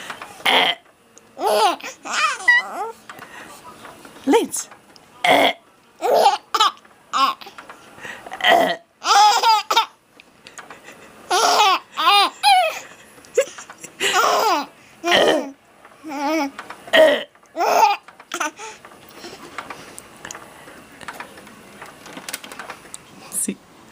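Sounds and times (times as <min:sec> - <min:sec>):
burping sounds: 0:00.4 - 0:00.8, 0:05.2 - 0:05.6, 0:08.3 - 0:08.9, 0:15.1 - 0:15.5, 0:16.9 - 0:17.3
baby laughing: 0:01.4 - 0:03.0, 0:06.0 - 0:07.6, 0:09.0 - 0:10.0, 0:11.3 - 0:16.5, 0:17.6 - 0:19.6.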